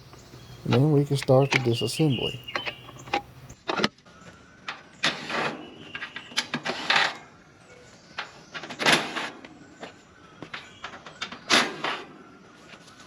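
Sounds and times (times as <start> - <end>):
short scraping rasps: 0.0 - 3.6.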